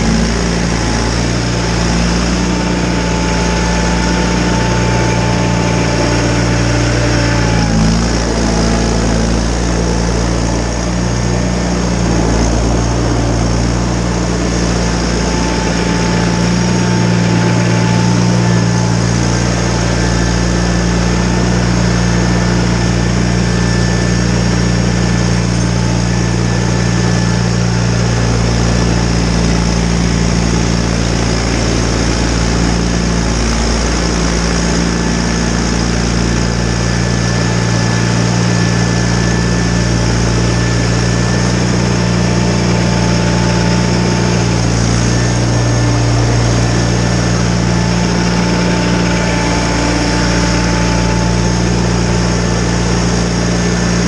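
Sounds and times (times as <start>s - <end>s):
garden tractor engine running: 0.0s - 54.0s
thin whine: 0.0s - 54.0s.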